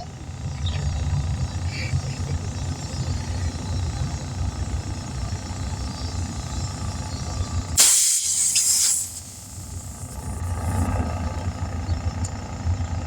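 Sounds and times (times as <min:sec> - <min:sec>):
air compressor humming: 0:04.2 - 0:11.0
compressed air hiss: 0:07.8 - 0:10.7.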